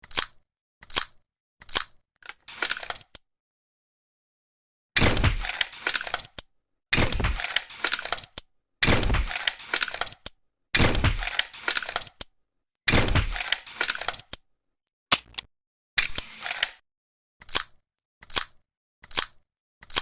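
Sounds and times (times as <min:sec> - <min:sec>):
tranquilizer pistol shots: 0:05.0 - 0:06.1, 0:06.9 - 0:08.1, 0:08.8 - 0:09.5, 0:10.8 - 0:11.5, 0:12.9 - 0:13.7.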